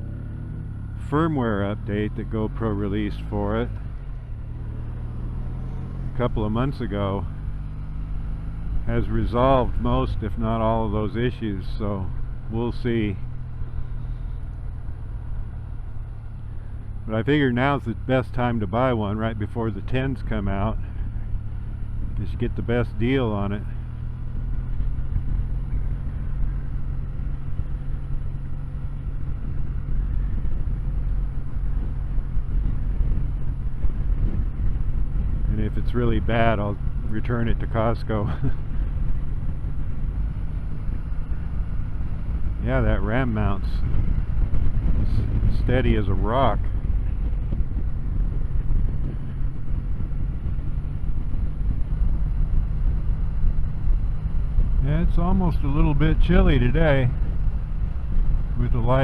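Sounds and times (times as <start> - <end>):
motorcycle engine running: 0.0 - 59.0
road noise: 0.0 - 59.0
wind noise: 23.3 - 59.0.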